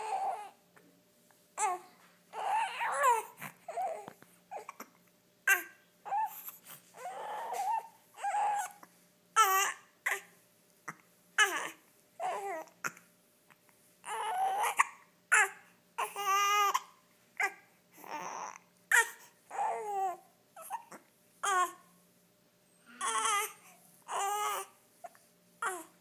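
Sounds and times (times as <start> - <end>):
infant cooing and whimpering: 0.0 - 0.6, 1.6 - 10.3, 10.9 - 13.1, 14.0 - 21.9, 22.9 - 26.0
infant hiccups: 14.2 - 17.6.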